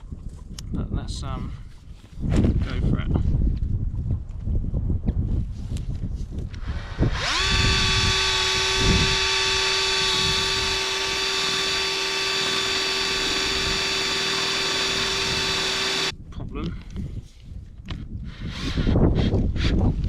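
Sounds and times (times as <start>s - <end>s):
electric drill whining: 6.5s - 16.1s, 18.3s - 19.8s.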